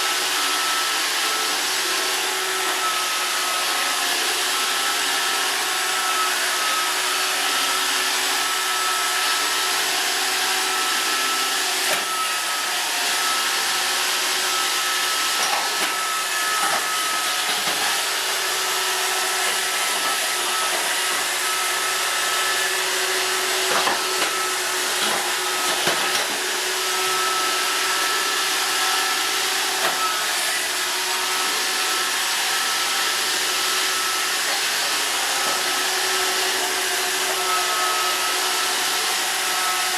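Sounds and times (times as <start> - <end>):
robot vacuum whirring: 0.2 - 39.9.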